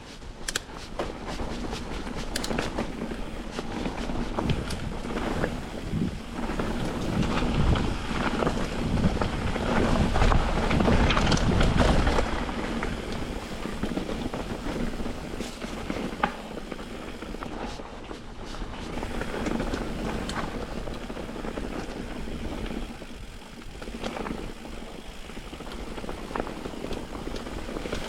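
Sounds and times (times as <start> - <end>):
bike knocking and rattling: 0.0 - 28.0
tyres rolling over rough ground: 0.0 - 28.0
wind rushing over microphone: 3.2 - 15.9.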